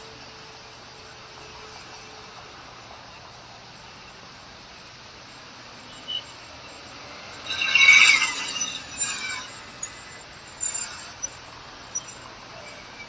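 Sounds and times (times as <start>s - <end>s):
steady hiss: 0.0s - 13.0s
brief high beep: 7.3s - 11.2s.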